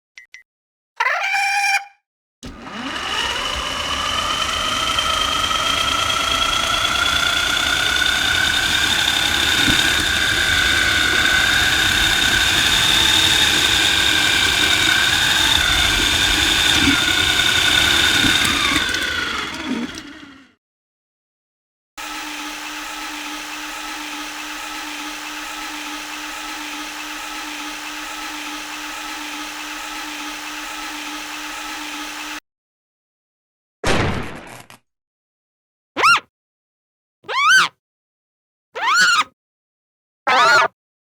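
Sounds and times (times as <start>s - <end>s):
high electric motor whine: 2.4s - 20.5s, 22.0s - 32.4s.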